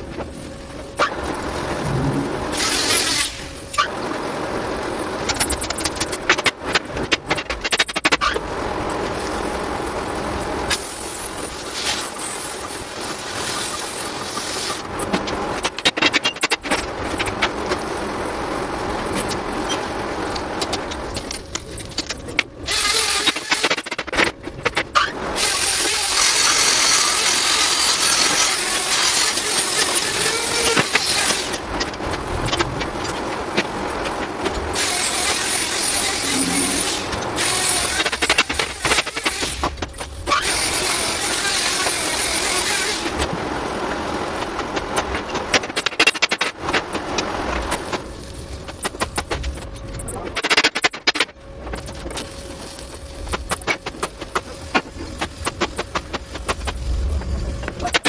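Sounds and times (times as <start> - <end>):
loud steady mechanical noise: 0.0 - 58.0
rushing hiss: 34.7 - 39.7.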